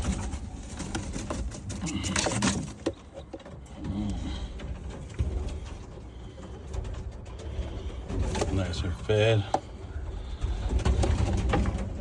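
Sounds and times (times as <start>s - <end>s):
rustling: 0.0s - 12.0s.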